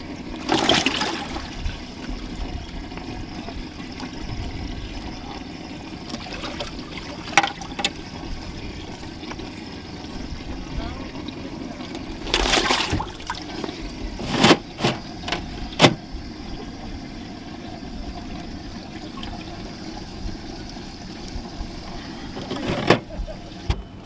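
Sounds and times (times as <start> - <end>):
steady low hum: 0.0 - 24.0
water trickling: 0.0 - 24.0.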